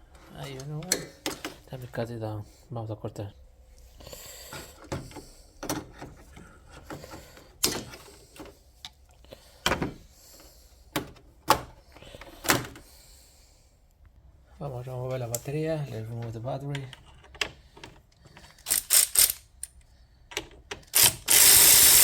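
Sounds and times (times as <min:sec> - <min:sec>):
hand tool cutting cable: 0:21.0 - 0:22.0.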